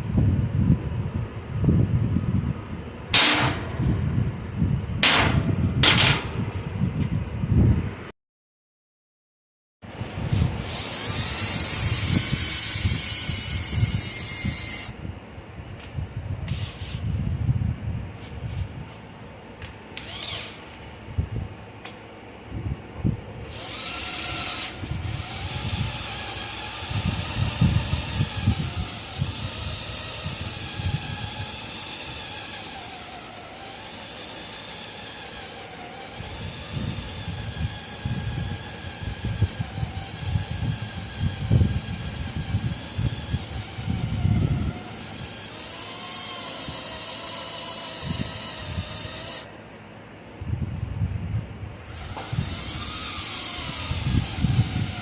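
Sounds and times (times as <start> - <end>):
power tool whining on metal: 10.3 - 15.0, 20.0 - 20.7, 23.4 - 49.6, 51.8 - 55.0.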